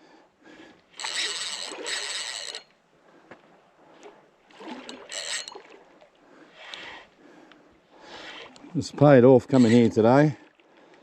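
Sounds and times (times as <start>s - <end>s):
water splashing: 4.0s - 7.1s, 8.0s - 10.7s.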